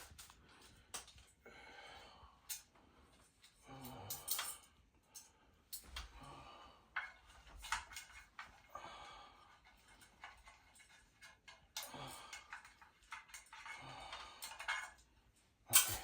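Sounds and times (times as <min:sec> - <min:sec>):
parts rustling and knocking: 0:00.0 - 0:01.4, 0:06.9 - 0:08.7, 0:09.4 - 0:16.0.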